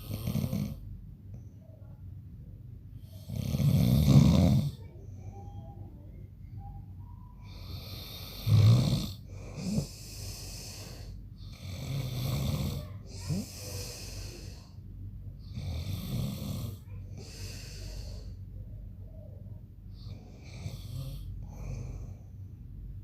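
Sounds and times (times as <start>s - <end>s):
man snoring: 0.0s - 0.8s, 3.2s - 4.8s, 7.5s - 14.7s, 15.5s - 17.9s, 20.1s - 22.0s
breathing: 9.2s - 18.6s, 19.9s - 22.6s.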